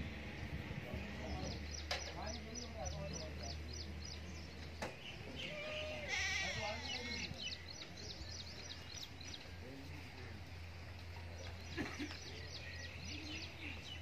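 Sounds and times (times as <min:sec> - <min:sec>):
steady low hum: 0:00.0 - 0:06.0
small birds chirping: 0:00.4 - 0:14.0
faint goat bleats: 0:05.4 - 0:07.3.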